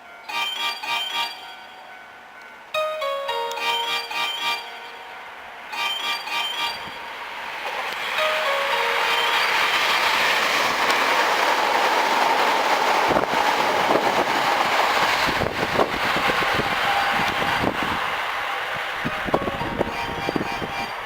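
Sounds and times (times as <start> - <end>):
electric train rushing past: 0.2 - 21.0
train wheels clacking on track: 5.6 - 21.0.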